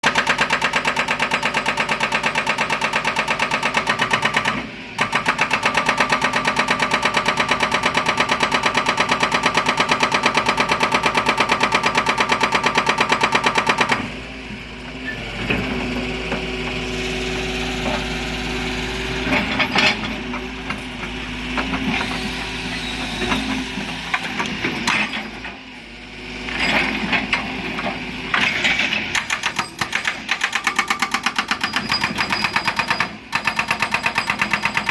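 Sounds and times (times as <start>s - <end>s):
hydraulic breaker hammer pounding rock: 0.0s - 14.1s, 26.5s - 34.9s
excavator engine running: 0.0s - 34.9s.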